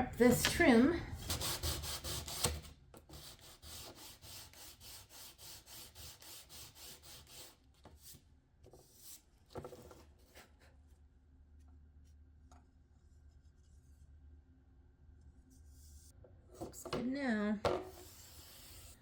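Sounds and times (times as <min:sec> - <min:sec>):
hand sanding wood: 0:01.2 - 0:07.6.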